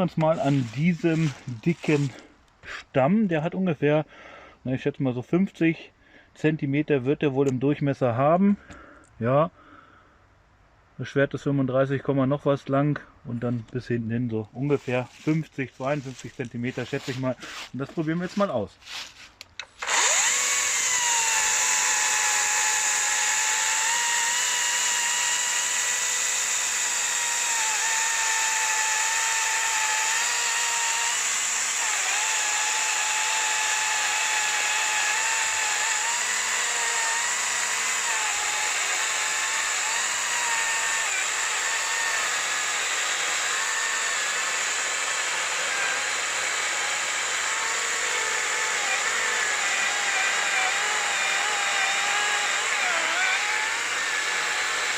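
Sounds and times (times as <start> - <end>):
electric chainsaw cutting log: 0.0 - 2.8, 19.7 - 54.9.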